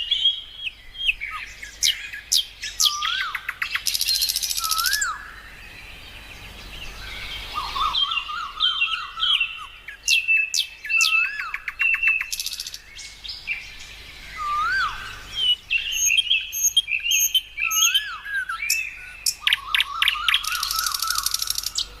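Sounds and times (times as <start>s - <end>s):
birds whistling and chirping: 0.0s - 22.0s.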